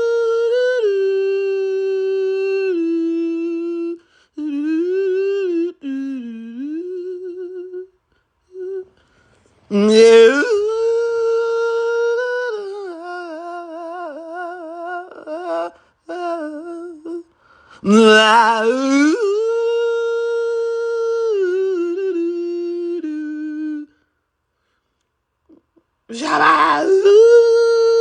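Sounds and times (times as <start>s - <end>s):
wolf howling: 26.1s - 27.2s.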